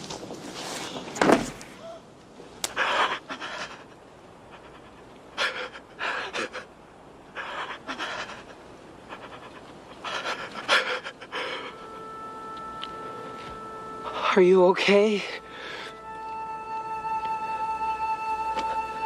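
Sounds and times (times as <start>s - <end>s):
person panting heavily: 2.7s - 12.0s, 15.4s - 16.0s.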